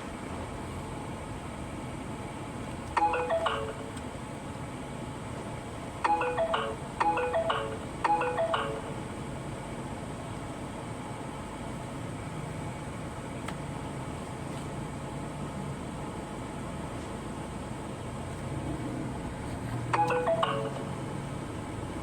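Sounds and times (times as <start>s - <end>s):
electronic marimba-like chime: 3.0s - 3.9s, 6.0s - 9.1s, 20.0s - 21.0s.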